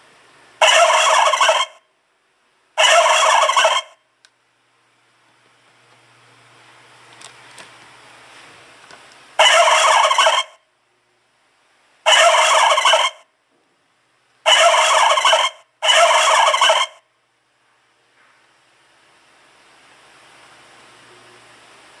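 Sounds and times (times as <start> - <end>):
scooter horn turkey gobble: 0.6 - 1.8, 2.8 - 4.0, 9.4 - 10.6, 12.1 - 13.2, 14.5 - 17.0.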